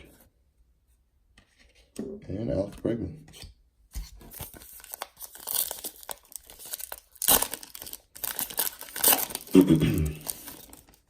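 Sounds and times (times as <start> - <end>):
foil wrapper crinkling and tearing: 4.3 - 11.0.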